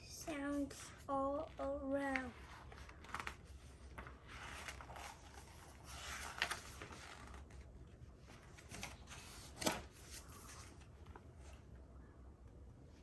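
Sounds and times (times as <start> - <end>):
book pages rustling: 0.3 - 11.8.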